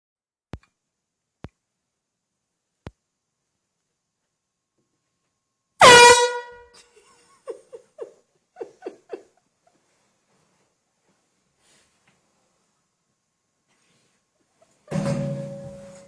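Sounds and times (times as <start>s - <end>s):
short air horn bursts: 5.8s - 6.6s
air horn blare: 5.8s - 6.7s.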